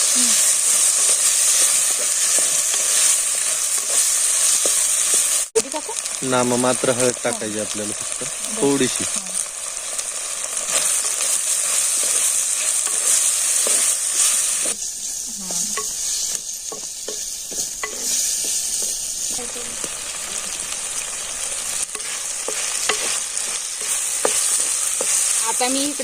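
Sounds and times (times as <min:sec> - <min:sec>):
vegetables sizzling in oil: 0:00.0 - 0:26.0
spoon scraping pan: 0:00.3 - 0:05.3, 0:10.4 - 0:26.0.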